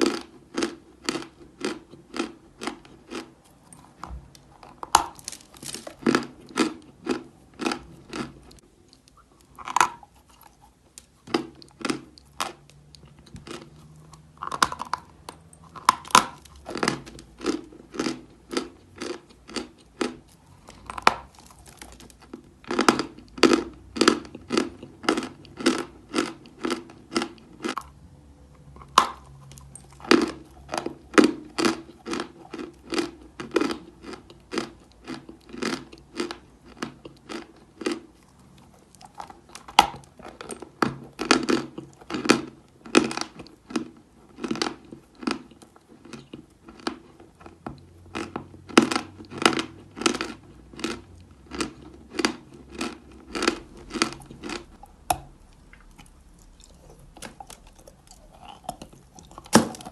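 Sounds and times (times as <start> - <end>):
chalk being chewed: 0.0 - 23.7, 43.0 - 59.9.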